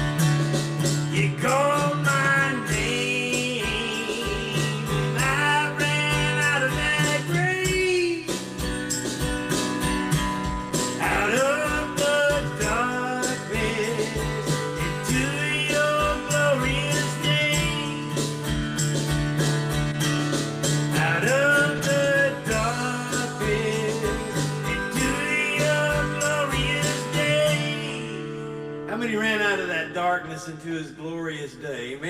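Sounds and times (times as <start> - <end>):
strummed acoustic guitar: 0.0 - 30.6
person singing: 1.1 - 8.5, 11.0 - 18.1, 21.0 - 28.2.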